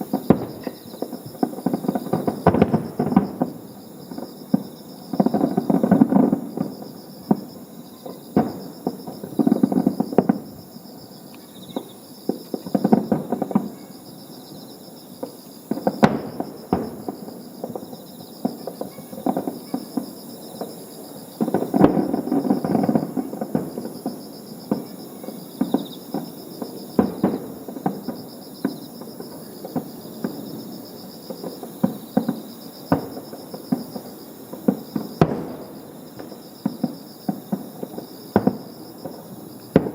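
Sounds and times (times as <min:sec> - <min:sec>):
fireworks booming: 0:00.0 - 0:10.8, 0:11.7 - 0:13.9, 0:15.2 - 0:39.9
fireworks crackling and popping: 0:00.0 - 0:14.0, 0:15.1 - 0:39.9
insects trilling: 0:00.0 - 0:39.9.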